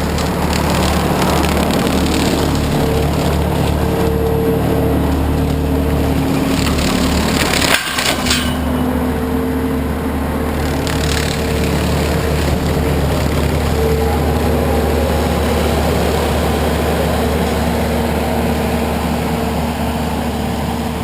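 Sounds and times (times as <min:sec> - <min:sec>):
brush mower cutting weeds: 0:00.0 - 0:21.0
skid steer engine running: 0:00.0 - 0:21.0.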